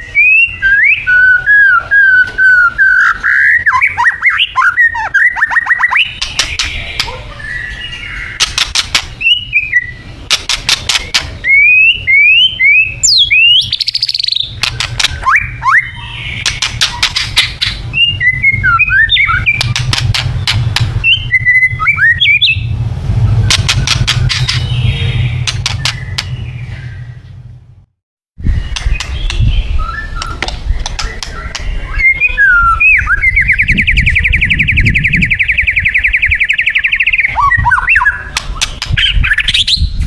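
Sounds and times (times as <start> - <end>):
bird singing whistled notes: 0.0 - 10.1, 11.4 - 27.4, 28.4 - 40.0
harsh clicking rattles: 6.1 - 7.1, 8.4 - 9.2, 10.3 - 11.4, 16.4 - 17.8, 19.5 - 21.0, 23.5 - 24.7, 25.4 - 26.3.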